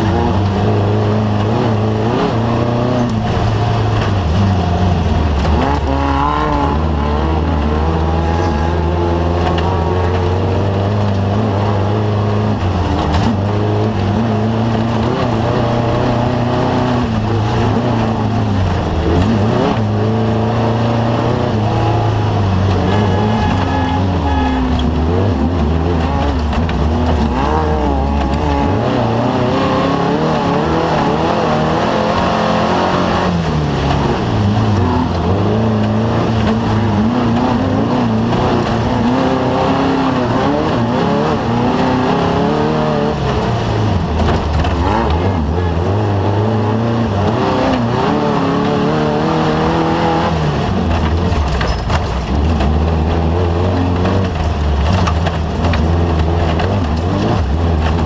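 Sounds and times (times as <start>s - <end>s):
race vehicle engine revving: 0.0s - 58.0s.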